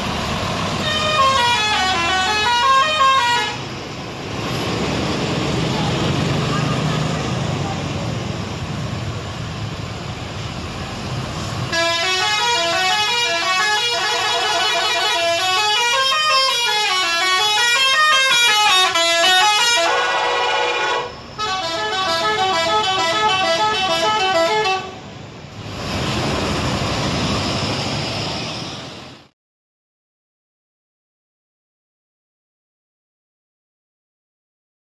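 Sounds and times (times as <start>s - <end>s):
vehicle rumble: 0.0s - 29.3s
multi-tone bus air horn melody: 0.8s - 3.8s, 11.7s - 25.1s.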